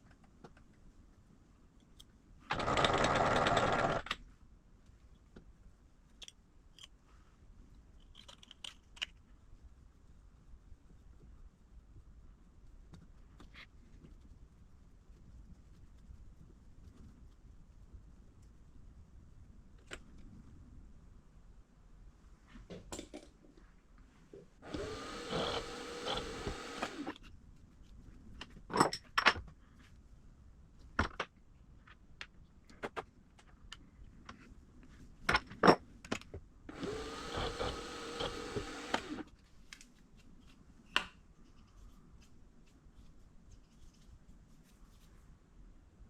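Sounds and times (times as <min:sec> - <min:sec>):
power tool motor whining: 0:02.5 - 0:04.0, 0:24.6 - 0:27.2, 0:36.7 - 0:39.3.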